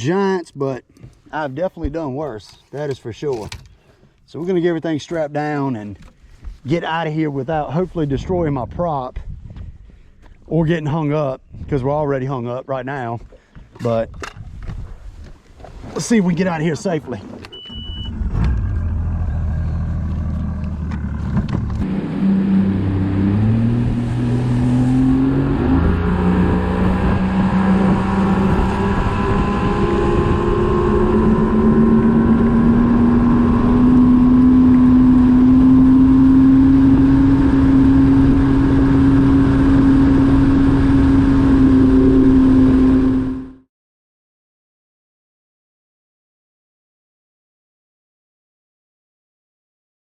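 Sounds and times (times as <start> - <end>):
outboard motor throttling up: 17.7 - 43.6.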